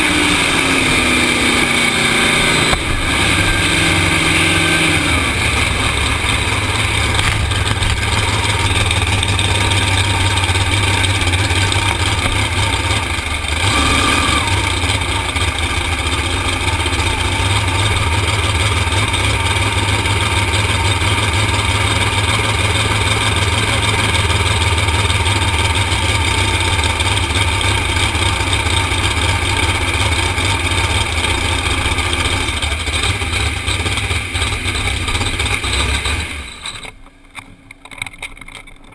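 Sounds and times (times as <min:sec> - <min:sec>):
boat engine running loud: 0:00.0 - 0:36.9.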